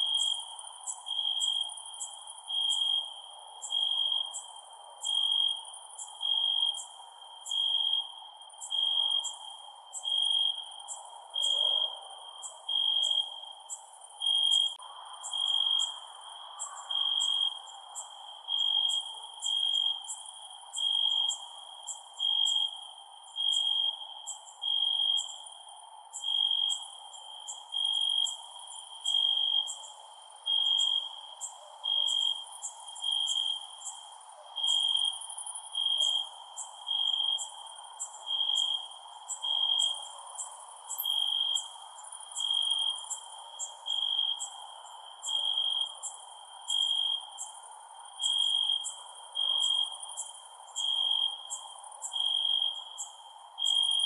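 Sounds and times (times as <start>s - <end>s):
cricket chirping: 0.0s - 54.0s
insects chirping quickly: 26.1s - 47.6s.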